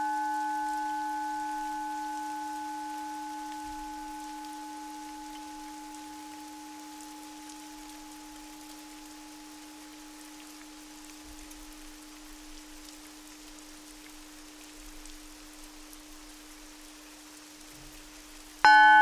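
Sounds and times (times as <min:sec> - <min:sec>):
singing bowl ringing: 0:00.0 - 0:10.2, 0:18.7 - 0:19.0
rain patter: 0:00.0 - 0:19.0.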